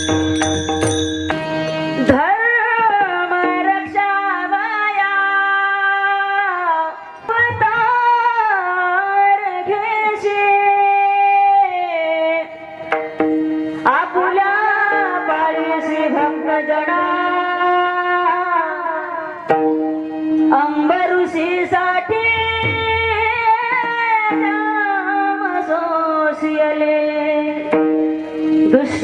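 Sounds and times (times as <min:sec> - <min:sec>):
harmonium notes: 0:00.0 - 0:29.0
person singing devotional song: 0:13.8 - 0:19.5, 0:20.4 - 0:27.8.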